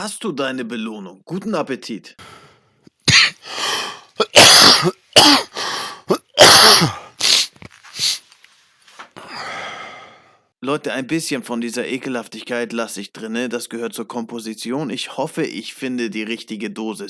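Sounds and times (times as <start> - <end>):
man coughing and hacking: 3.1 - 3.5, 4.2 - 7.5.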